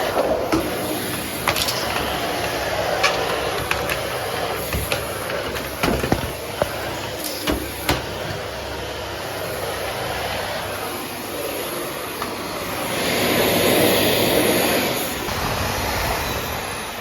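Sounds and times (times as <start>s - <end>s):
clicks and knocks: 0.0s - 8.5s
vacuum cleaner running: 0.0s - 17.0s.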